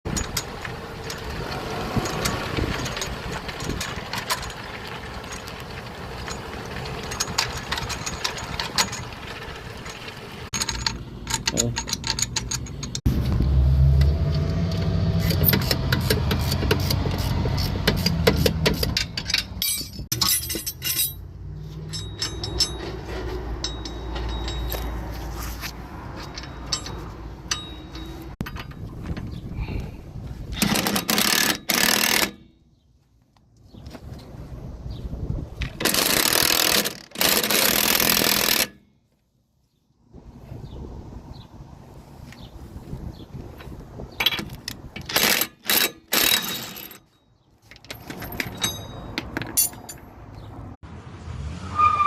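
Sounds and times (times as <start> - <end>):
low car drone: 0.1 - 7.8, 12.7 - 18.7
wheel clicking and knocking: 0.1 - 13.1, 14.7 - 20.8, 30.5 - 32.4, 35.6 - 38.8, 43.5 - 50.5.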